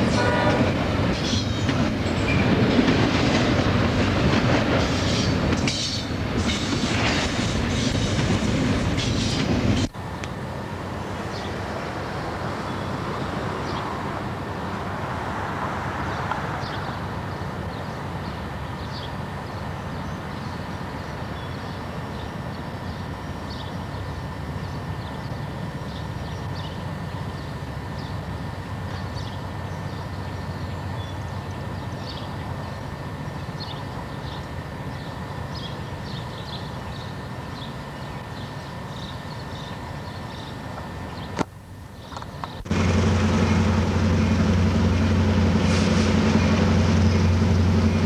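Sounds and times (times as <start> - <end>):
train wheels rumbling on rail: 0.0 - 48.0.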